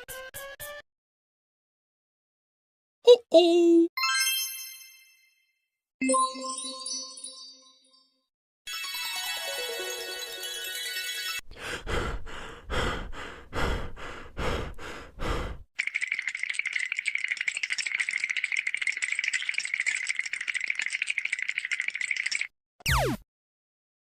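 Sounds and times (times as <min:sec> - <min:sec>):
chiming tone: 0:08.7 - 0:11.4
fast dry rattle: 0:15.8 - 0:22.5.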